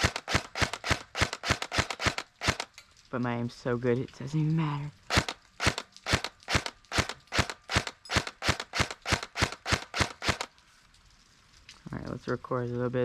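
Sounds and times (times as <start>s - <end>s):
airsoft rifle shots: 0.0s - 2.7s, 5.1s - 10.5s.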